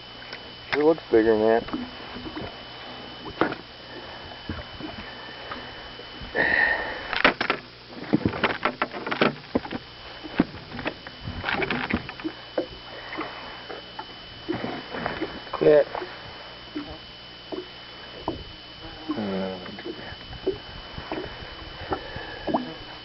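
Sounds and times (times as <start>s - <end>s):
fish and gear being handled: 1.6s - 6.3s, 6.9s - 23.0s
faint steady high tone: 18.2s - 20.0s.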